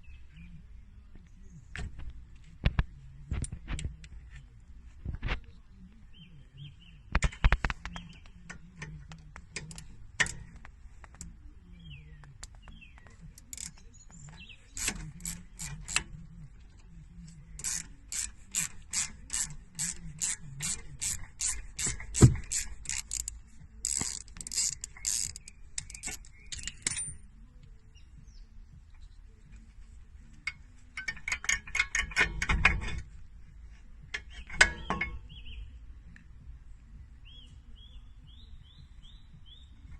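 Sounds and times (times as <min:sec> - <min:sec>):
ratchet wrench clicking: 0:13.4 - 0:13.8, 0:14.7 - 0:16.1, 0:17.6 - 0:27.2, 0:31.0 - 0:33.1
sharp metal knock: 0:34.4 - 0:35.4.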